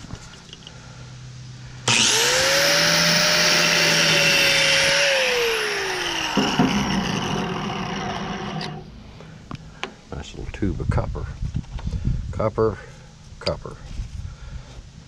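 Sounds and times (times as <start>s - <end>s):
power tool motor whine: 1.9s - 8.9s
knocks and rattles: 6.2s - 8.4s.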